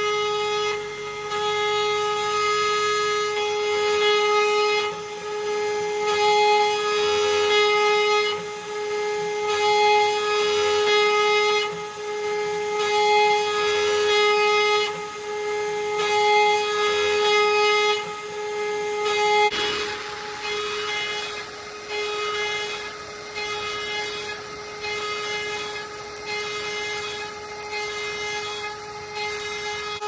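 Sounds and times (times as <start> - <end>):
cnc router spindle whining: 0.0 - 30.0
end mill cutting aluminum: 6.1 - 30.0.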